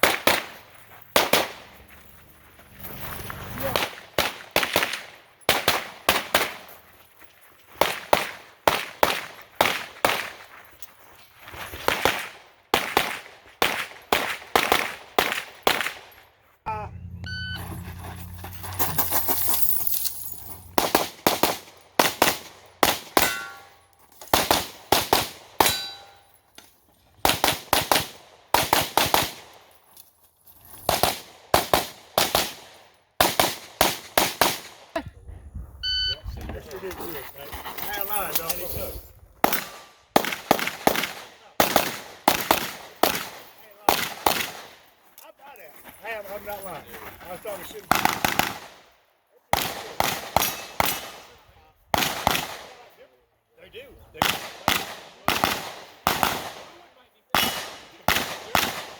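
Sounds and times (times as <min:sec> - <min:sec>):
steel targets clanging: 0:23.1 - 0:24.0, 0:25.6 - 0:26.4.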